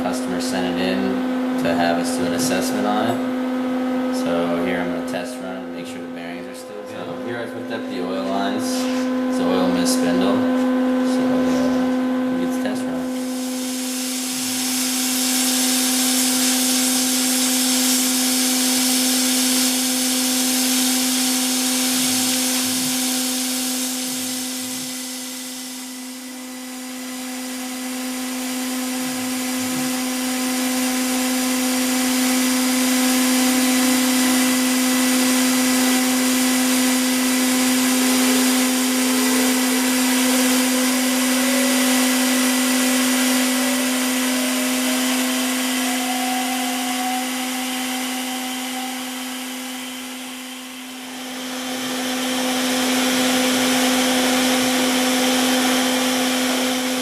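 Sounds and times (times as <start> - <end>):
machining spindle whine: 0.0 - 57.0
hiss: 13.2 - 26.2.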